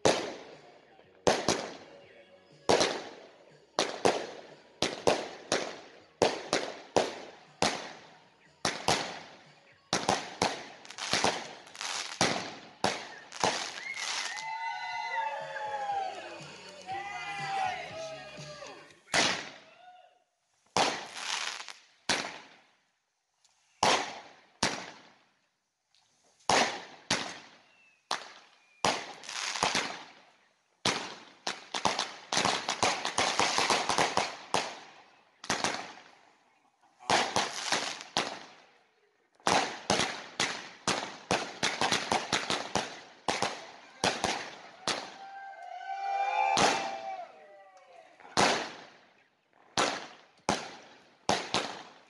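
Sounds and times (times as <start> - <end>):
fireworks banging and crackling: 0.0 - 2.0, 2.6 - 14.7, 19.0 - 19.6, 20.6 - 22.6, 23.8 - 25.2, 26.4 - 36.2, 37.0 - 38.7, 39.3 - 45.4, 46.5 - 47.2, 48.2 - 52.0.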